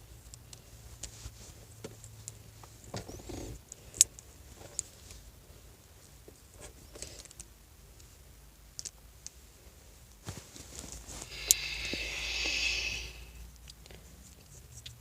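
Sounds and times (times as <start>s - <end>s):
short rustle: 9.9s - 13.1s.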